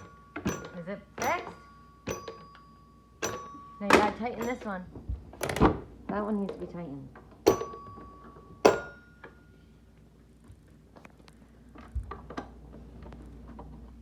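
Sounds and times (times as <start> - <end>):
sharp metallic clinks: 0.0 - 4.9, 7.4 - 9.4.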